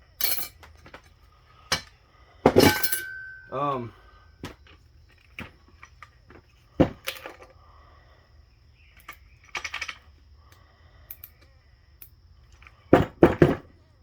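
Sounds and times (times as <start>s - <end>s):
metal parts clinking: 0.2s - 7.5s, 8.9s - 10.2s, 11.1s - 12.8s
rattle of clicks: 8.9s - 12.8s.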